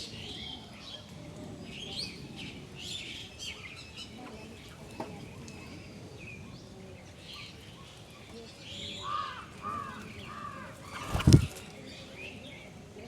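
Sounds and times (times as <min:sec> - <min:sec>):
small birds chirping: 0:07.0 - 0:12.6.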